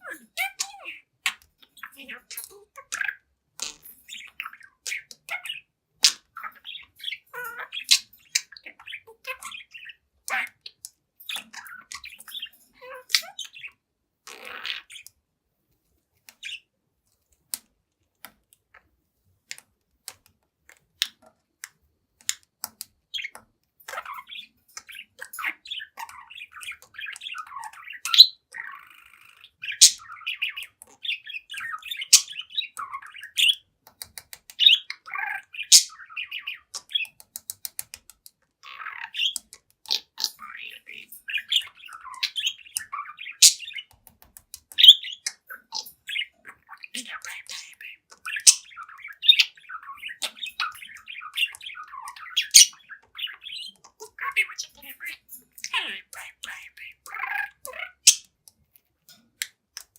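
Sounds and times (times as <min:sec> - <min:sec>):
budgerigar chattering: 0:23.2 - 0:33.7, 0:34.6 - 0:37.2, 0:38.6 - 0:43.9, 0:44.8 - 0:58.3.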